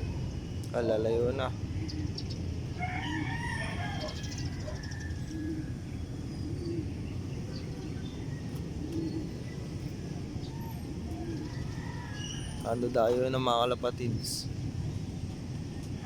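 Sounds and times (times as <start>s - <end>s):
steady low rumble: 0.0s - 16.0s
pigeons cooing: 0.9s - 13.2s.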